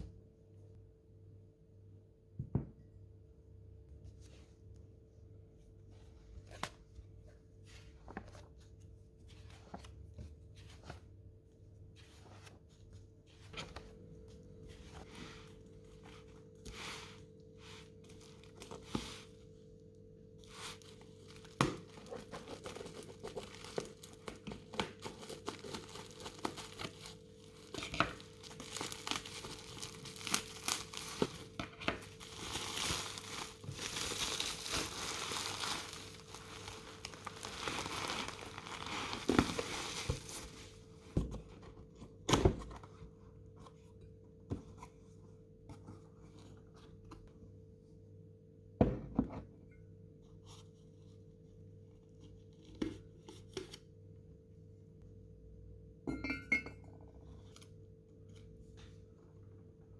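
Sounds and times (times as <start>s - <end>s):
faint steady hum: 0.0s - 48.8s
packaging crinkling and tearing: 17.9s - 19.2s, 20.5s - 40.7s.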